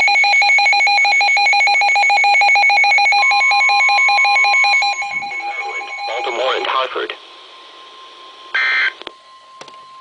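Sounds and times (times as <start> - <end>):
rapid alarm beeping: 0.0 - 10.0
warbling high tone: 4.4 - 6.9
steady tone: 4.6 - 10.0.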